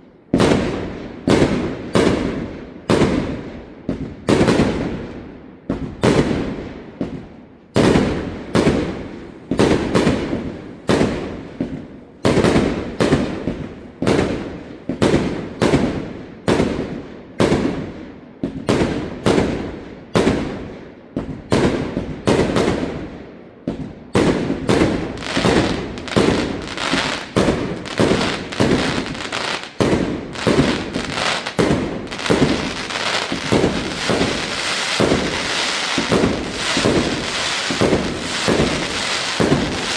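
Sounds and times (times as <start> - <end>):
fireworks bangs and crackle: 0.0 - 39.9.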